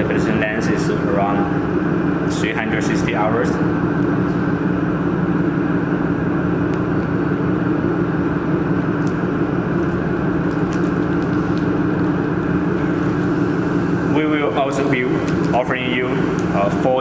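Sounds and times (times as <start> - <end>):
mechanical hum: 0.0 - 17.0.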